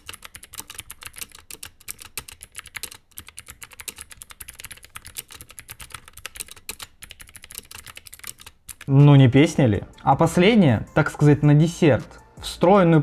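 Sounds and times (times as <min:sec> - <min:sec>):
fast mechanical keyboard typing: 0:00.0 - 0:09.1.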